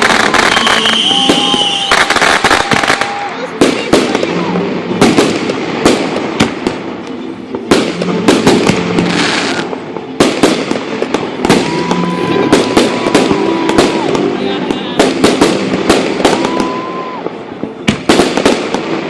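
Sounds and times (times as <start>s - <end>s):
fireworks cracking and banging: 0.0s - 19.0s
steady whistling tone: 0.4s - 2.0s.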